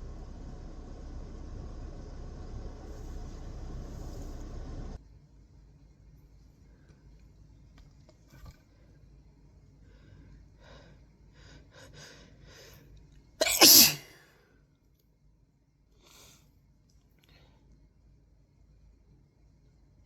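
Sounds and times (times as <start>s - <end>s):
person sneezing: 13.4s - 14.2s.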